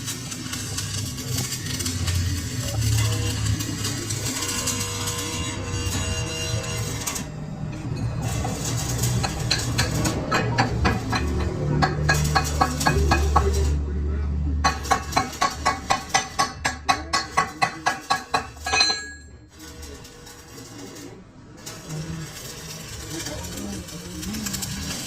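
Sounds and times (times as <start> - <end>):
hammer striking steel: 8.0 - 13.8, 14.6 - 19.4.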